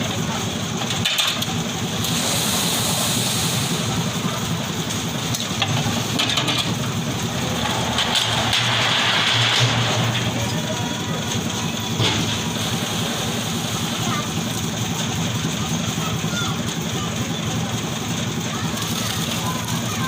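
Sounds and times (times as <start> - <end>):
construction machine engine running: 0.0 - 20.0
hissing noise: 1.8 - 6.2.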